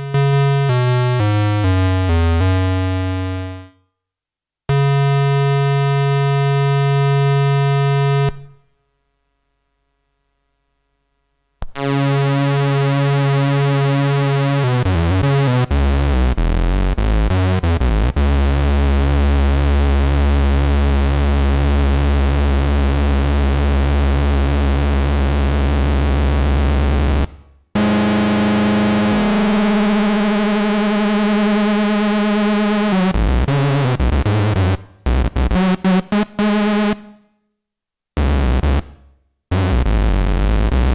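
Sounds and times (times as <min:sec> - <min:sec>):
deep bass drone: 0:14.8 - 0:32.5
synthesizer buzzy notes: 0:26.6 - 0:37.0.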